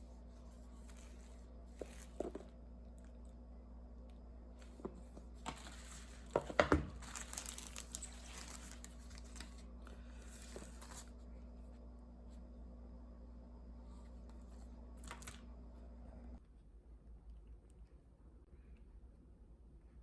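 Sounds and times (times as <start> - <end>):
packaging tearing and crinkling: 5.4 - 11.2.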